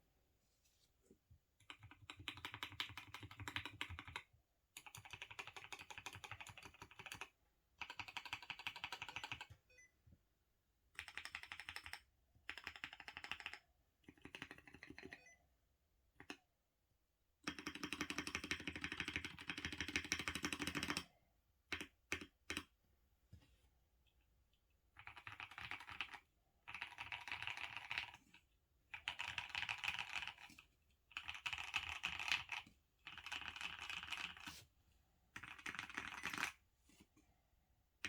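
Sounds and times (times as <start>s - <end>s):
fast mechanical keyboard typing: 1.6s - 4.2s, 4.8s - 9.5s, 11.0s - 15.2s, 17.5s - 21.0s, 25.0s - 28.2s, 28.9s - 34.6s, 35.4s - 36.6s.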